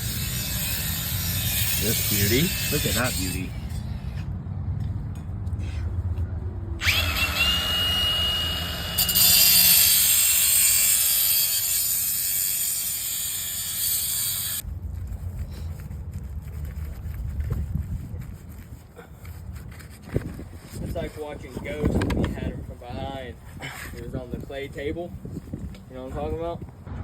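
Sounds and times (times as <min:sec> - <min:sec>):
power tool whining and rasping: 0:00.0 - 0:04.2, 0:06.8 - 0:14.6.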